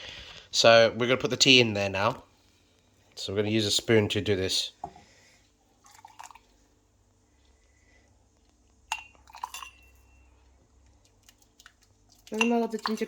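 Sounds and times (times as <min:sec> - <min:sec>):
faint liquid drips: 0:04.8 - 0:13.0
metal spoon clinking against glass: 0:08.9 - 0:10.2, 0:12.3 - 0:13.0.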